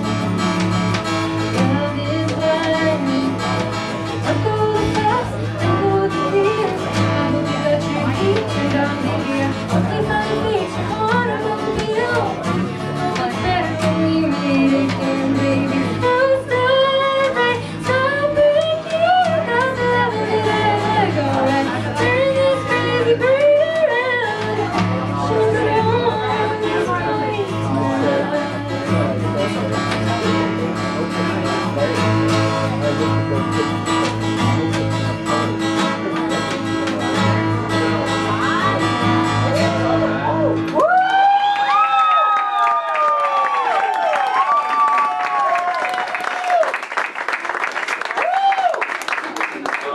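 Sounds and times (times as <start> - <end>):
guitar: 0.0 - 49.9
person singing: 1.5 - 29.5.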